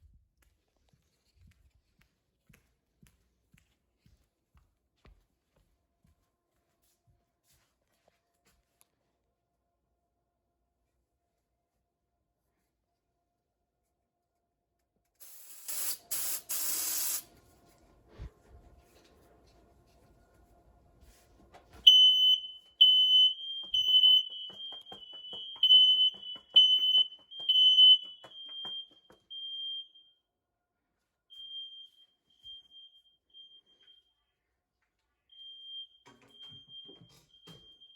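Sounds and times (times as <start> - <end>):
aerosol spray hissing: 15.2 - 17.3
smoke alarm shrill beeping: 15.8 - 17.2, 21.8 - 30.2, 31.3 - 34.2, 35.3 - 37.9.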